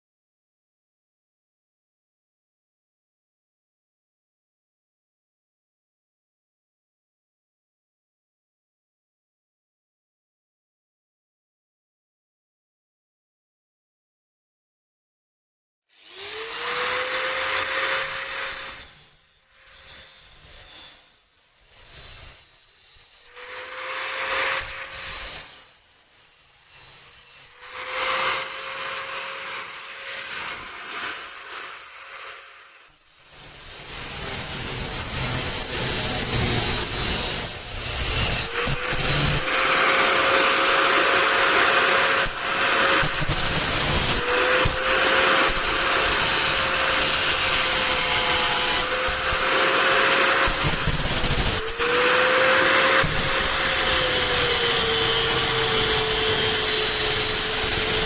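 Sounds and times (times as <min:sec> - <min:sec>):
power tool motor whine: 0:15.9 - 0:58.0.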